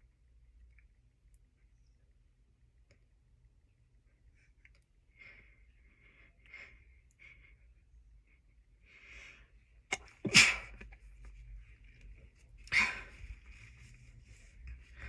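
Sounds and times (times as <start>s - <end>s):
stifled sneeze: 9.9s - 11.0s, 12.7s - 13.2s.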